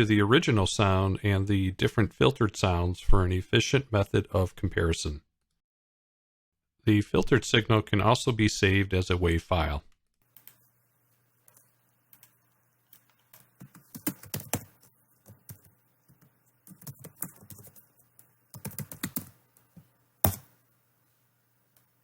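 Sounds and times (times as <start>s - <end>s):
faint steady hum: 6.9s - 22.0s
typing on computer keyboard: 13.0s - 19.4s, 20.2s - 20.5s.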